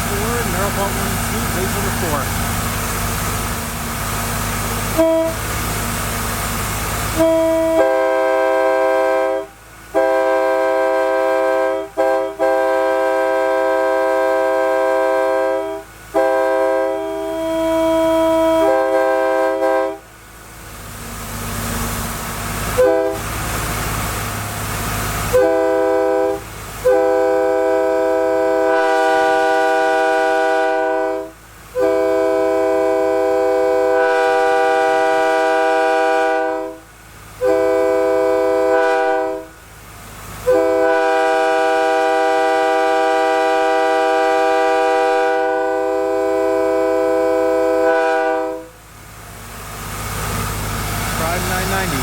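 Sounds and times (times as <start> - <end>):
locomotive air horn blasts: 0.0 - 2.4, 4.8 - 5.9, 6.9 - 20.2, 22.6 - 23.7, 25.2 - 39.6, 40.4 - 48.8, 51.2 - 52.0.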